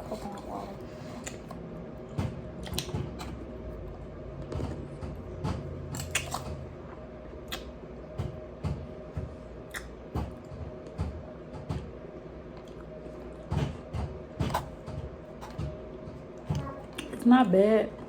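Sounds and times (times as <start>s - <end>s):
chewing: 6.0s - 7.7s.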